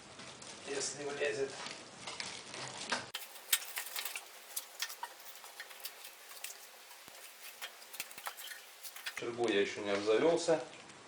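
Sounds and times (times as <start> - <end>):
wood fire crackling: 3.2 - 9.2.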